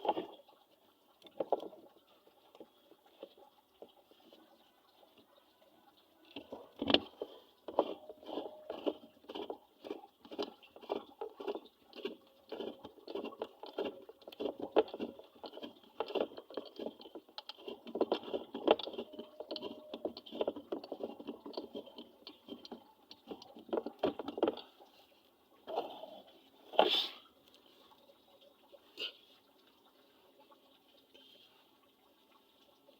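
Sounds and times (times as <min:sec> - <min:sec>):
small knocks and clicks: 0:01.2 - 0:04.0, 0:06.2 - 0:24.8.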